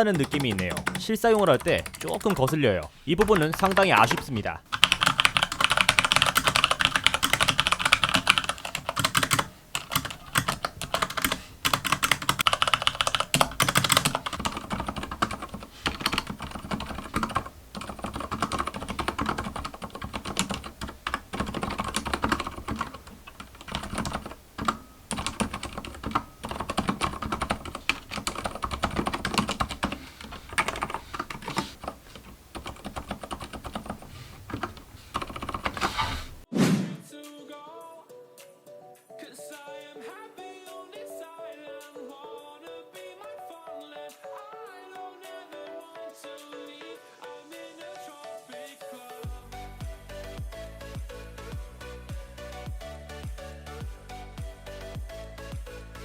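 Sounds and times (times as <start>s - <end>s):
clicky mechanical keyboard typing: 0.0s - 36.5s.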